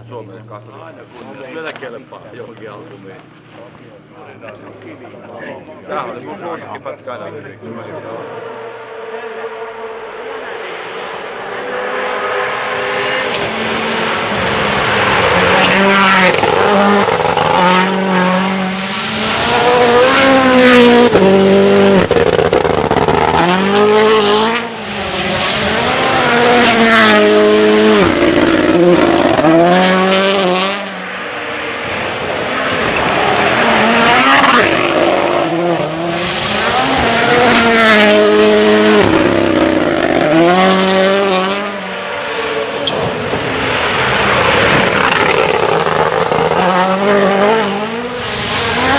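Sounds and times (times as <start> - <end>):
rally car engines revving: 0.0 - 48.9.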